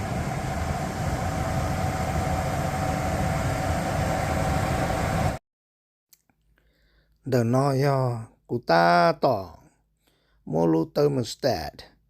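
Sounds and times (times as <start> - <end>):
gas furnace running: 0.0 - 5.4.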